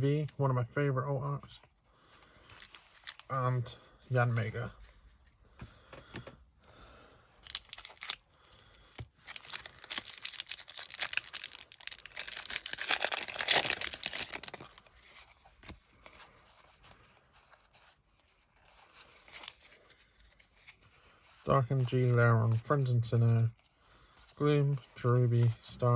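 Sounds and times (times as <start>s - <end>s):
foil wrapper tearing and crinkling: 7.4s - 8.2s, 9.2s - 14.9s.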